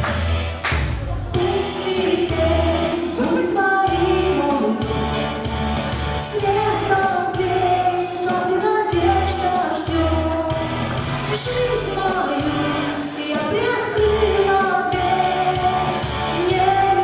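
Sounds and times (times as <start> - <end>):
instrumental accompaniment with beat: 0.0 - 17.0
girl singing: 1.3 - 4.9, 6.2 - 10.6, 11.3 - 17.0.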